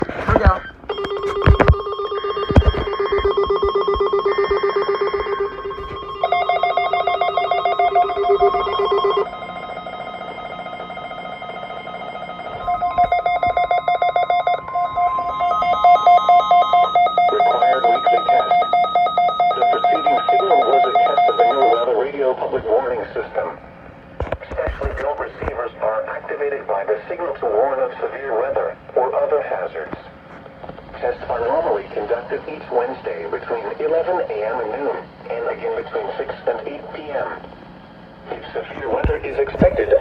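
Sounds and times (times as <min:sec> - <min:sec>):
pulsing electronic alarm tones: 0:00.9 - 0:22.0.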